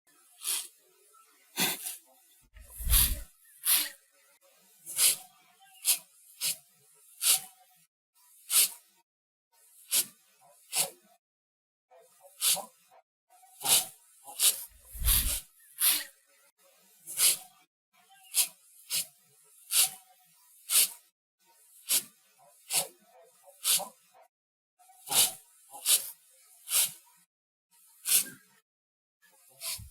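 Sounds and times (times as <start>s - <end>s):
praying mantis hissing: 2.7s - 3.2s, 14.8s - 15.4s.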